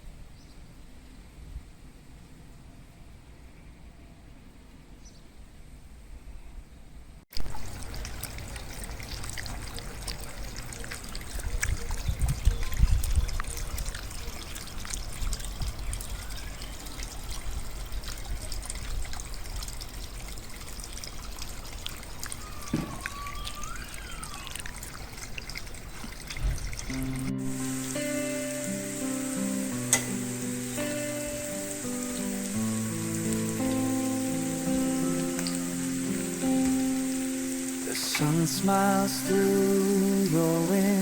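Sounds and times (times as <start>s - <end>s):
water trickling and splashing: 7.4s - 41.0s
rising and falling whistle: 22.6s - 24.5s.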